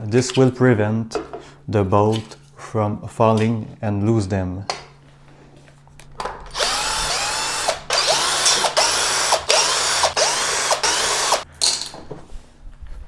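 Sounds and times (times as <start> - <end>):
power drill motor whine: 6.5 - 11.4.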